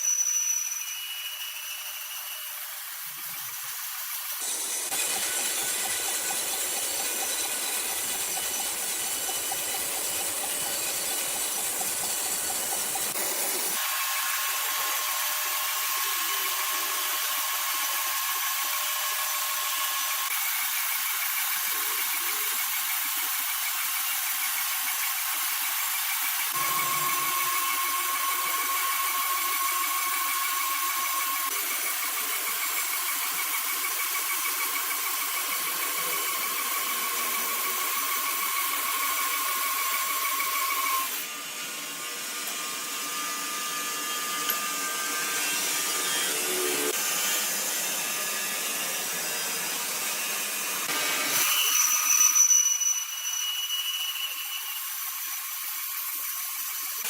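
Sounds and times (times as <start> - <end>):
saw high-pitched whine: 0.0 - 57.0.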